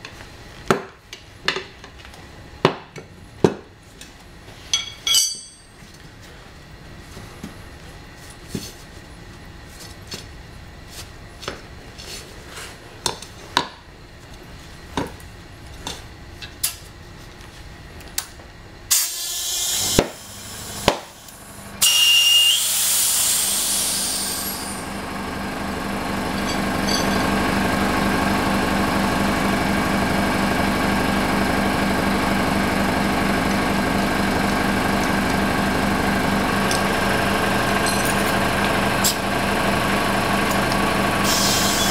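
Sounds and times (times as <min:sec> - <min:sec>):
metal tools clinking: 0:04.7 - 0:05.8, 0:26.3 - 0:27.3
air compressor running: 0:18.9 - 0:41.9
compressed air hissing blasts: 0:21.8 - 0:24.7.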